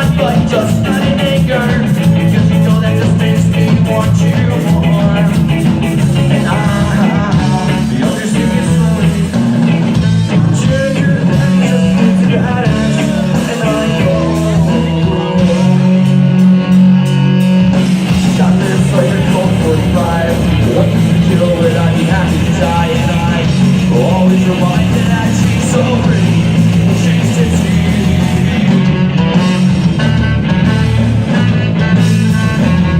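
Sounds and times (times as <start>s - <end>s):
bass line: 0.0s - 32.9s
electric guitar: 0.0s - 32.9s
live rock band playing: 0.0s - 32.9s.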